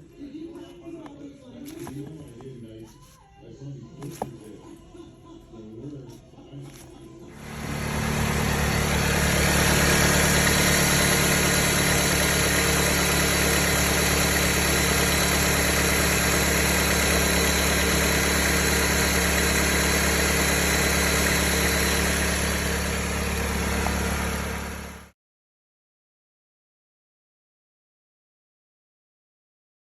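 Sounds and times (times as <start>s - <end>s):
alternator whine: 7.3s - 25.1s
car engine idling: 7.4s - 25.1s.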